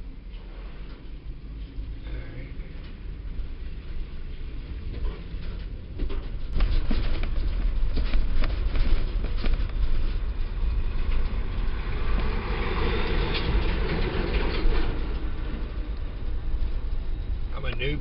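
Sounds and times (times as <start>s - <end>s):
engine and road rumble: 0.0s - 18.0s.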